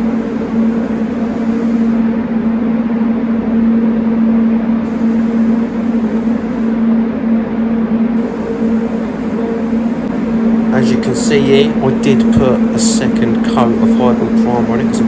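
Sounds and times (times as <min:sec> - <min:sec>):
motor hum: 0:00.0 - 0:15.0.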